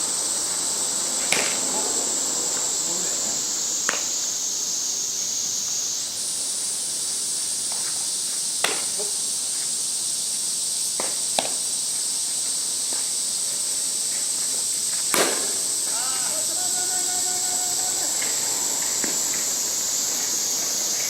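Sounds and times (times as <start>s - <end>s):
high-pitched insect chorus: 0.0s - 21.0s
bat hitting softball: 1.2s - 1.6s, 15.1s - 16.1s.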